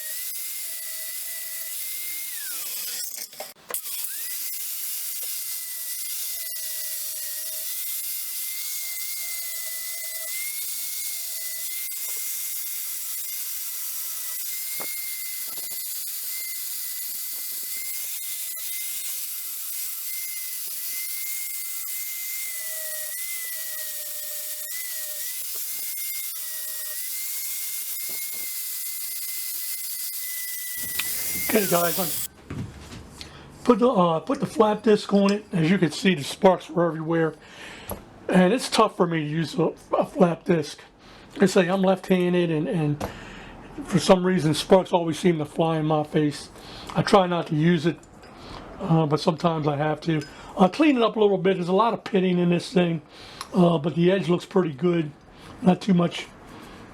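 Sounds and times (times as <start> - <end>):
angle grinder grinding metal: 0.0 - 32.3.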